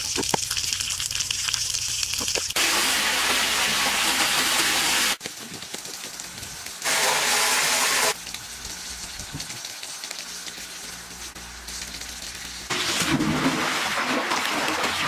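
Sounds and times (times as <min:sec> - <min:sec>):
loud steady hiss: 0:06.3 - 0:09.9.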